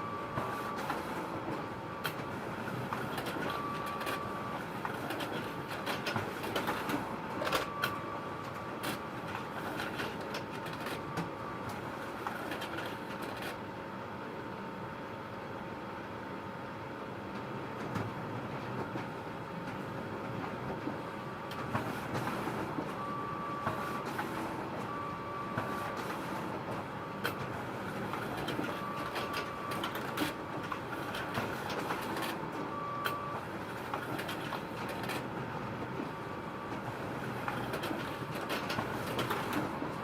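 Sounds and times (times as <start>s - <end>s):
photocopier humming and clicking: 0.0s - 13.8s, 17.3s - 40.0s
photocopier whines: 3.2s - 5.6s, 22.0s - 35.3s.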